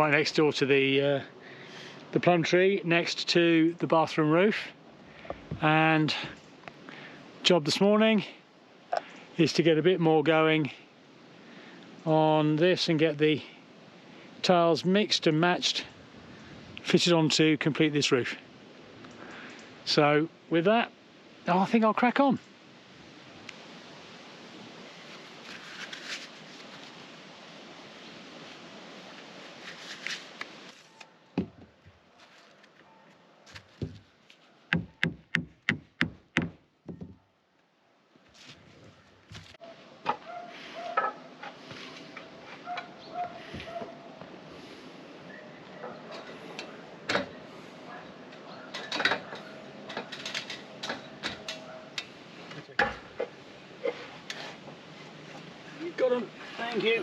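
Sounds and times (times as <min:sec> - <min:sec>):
steady rushing hiss: 0:00.0 - 0:32.1, 0:38.4 - 0:48.5, 0:49.3 - 0:57.0
hard objects knocking: 0:34.7 - 0:37.2.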